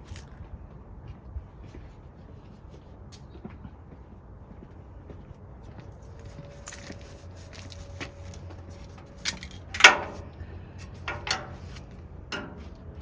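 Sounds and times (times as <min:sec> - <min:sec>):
low steady hum: 0:06.1 - 0:13.0
metallic ring: 0:06.6 - 0:13.0
sharp knocks and clanks: 0:09.0 - 0:13.0.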